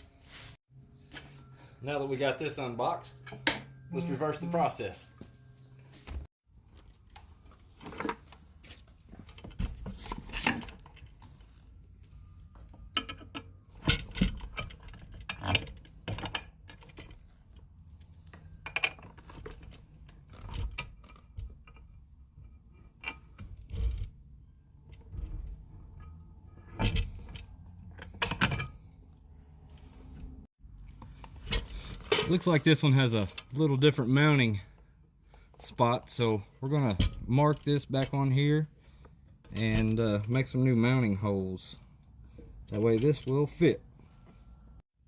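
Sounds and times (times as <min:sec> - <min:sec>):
metal hardware clinking and rattling: 0:06.8 - 0:29.2, 0:30.8 - 0:33.9, 0:35.3 - 0:44.6.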